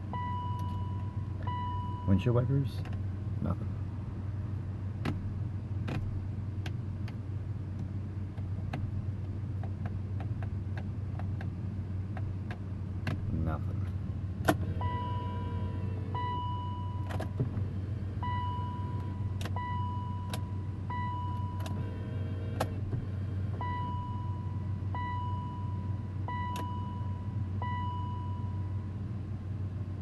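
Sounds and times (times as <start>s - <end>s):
ignition key clicks: 0.1s - 2.2s, 12.1s - 13.3s, 14.4s - 15.2s, 16.2s - 17.6s, 18.2s - 24.3s, 26.3s - 28.0s.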